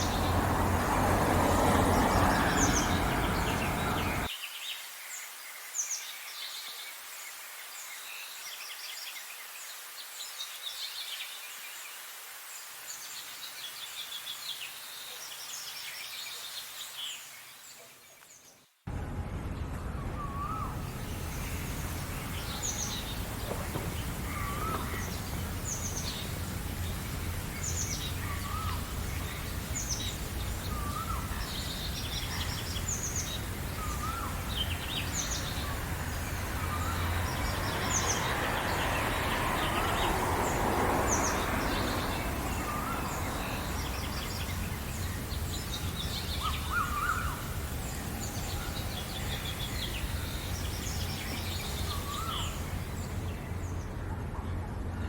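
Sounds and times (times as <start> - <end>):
birds chirping: 0.0 - 4.3, 20.0 - 54.3
broad rushing noise: 0.0 - 4.3, 18.9 - 55.0
low rumble: 18.9 - 27.3.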